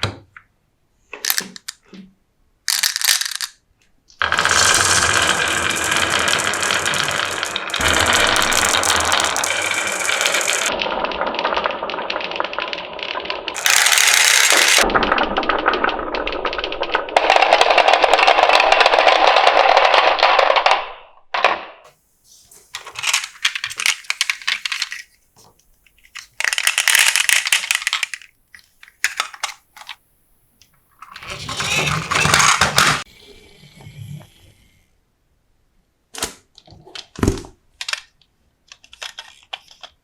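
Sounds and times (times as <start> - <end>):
marbles clattering down a track: 1.2 - 1.8, 2.7 - 3.6, 4.2 - 20.8, 22.8 - 25.1, 26.0 - 30.0, 31.0 - 33.1.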